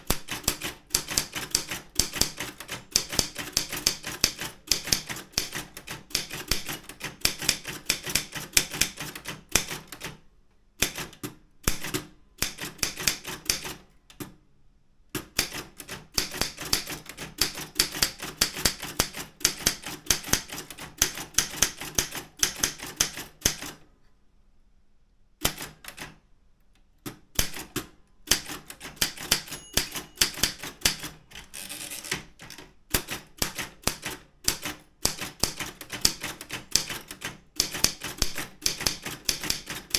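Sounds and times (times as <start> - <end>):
manual typewriter typing: 0.0 - 10.2, 15.2 - 23.8, 27.1 - 39.9.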